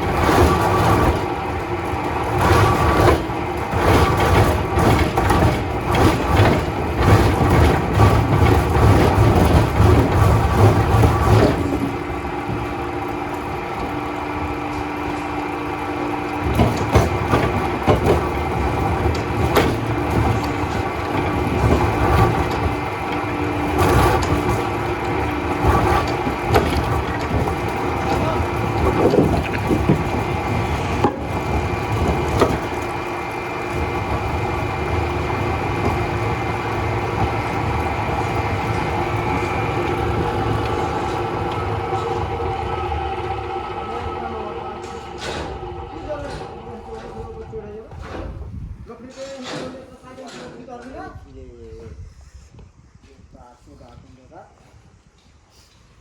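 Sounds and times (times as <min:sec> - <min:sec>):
wood cracking and splintering: 0:00.0 - 0:42.2
machinery humming: 0:00.0 - 0:50.1.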